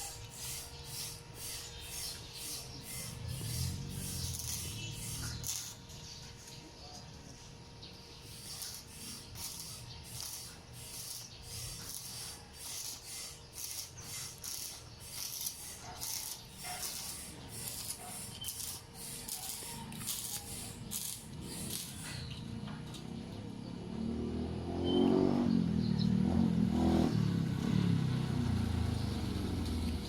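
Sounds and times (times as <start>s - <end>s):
hand scraping strokes: 8.2s - 22.2s.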